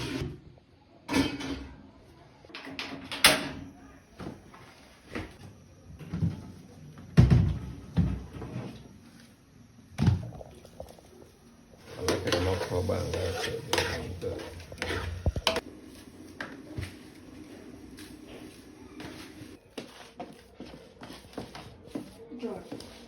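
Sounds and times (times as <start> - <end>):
cookware clattering: 1.1 - 1.8.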